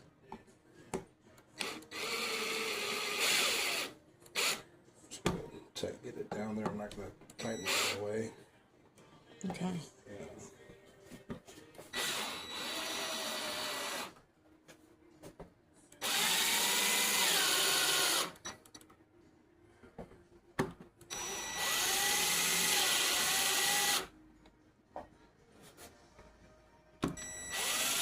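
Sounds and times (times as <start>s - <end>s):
power drill whining: 1.6s - 4.6s, 7.6s - 8.0s, 12.0s - 14.1s, 16.0s - 18.4s, 21.1s - 24.1s, 27.2s - 28.0s.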